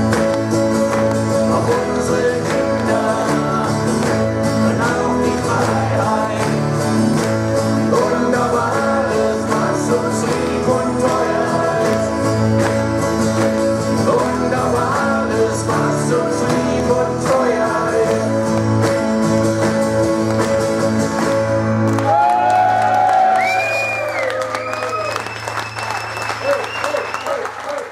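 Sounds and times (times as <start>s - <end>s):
steady bass: 0.0s - 22.2s
guitars: 0.0s - 26.8s
person singing: 1.2s - 6.9s, 7.7s - 12.7s, 13.8s - 18.7s.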